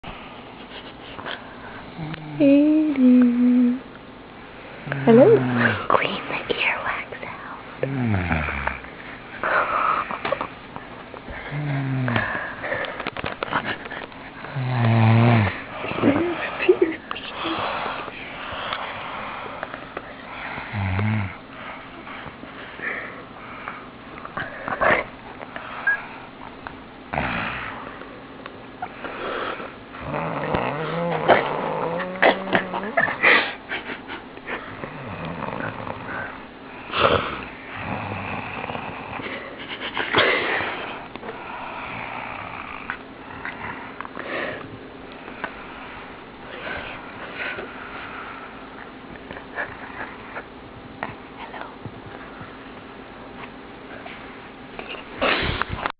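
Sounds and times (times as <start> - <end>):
girl snoring with wheezy breaths: 1.7 - 3.8, 4.8 - 10.4, 11.3 - 13.2, 14.4 - 22.1, 27.1 - 27.9, 28.8 - 33.2, 34.6 - 44.6.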